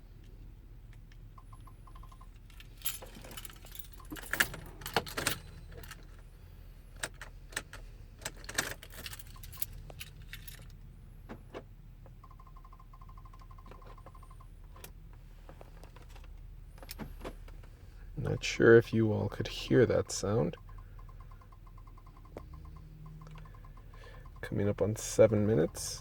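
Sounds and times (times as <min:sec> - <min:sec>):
keys jangling: 0:02.4 - 0:06.1, 0:08.3 - 0:10.8.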